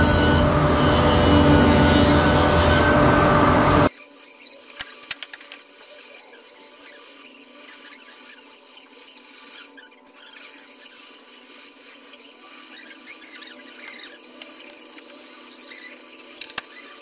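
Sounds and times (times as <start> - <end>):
power tool whining: 0.0 - 3.9.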